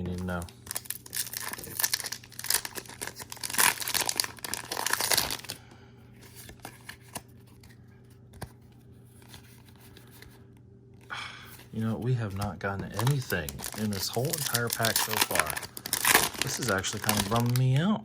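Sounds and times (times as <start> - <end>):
foil wrapper crinkling and tearing: 0.0 - 5.6, 11.6 - 17.8.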